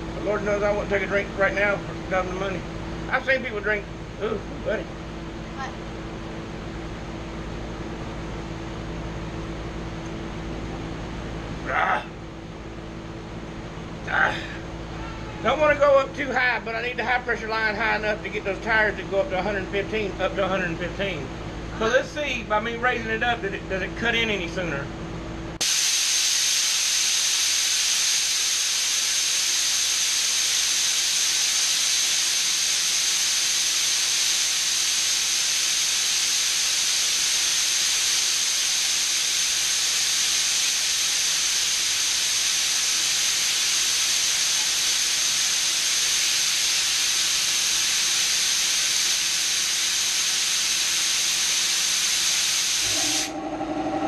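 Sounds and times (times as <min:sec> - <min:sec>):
compressed air hissing: 0:25.6 - 0:54.0.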